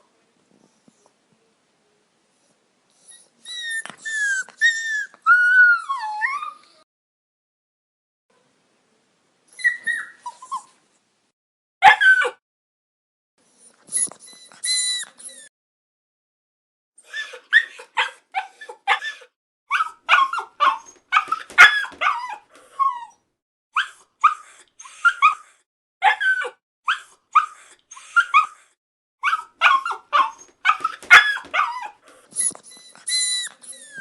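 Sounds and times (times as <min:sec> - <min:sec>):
puppy whimpering and yelping: 0:03.0 - 0:06.8, 0:09.5 - 0:10.8, 0:13.7 - 0:15.5, 0:17.1 - 0:23.2, 0:23.8 - 0:28.6, 0:29.2 - 0:34.0.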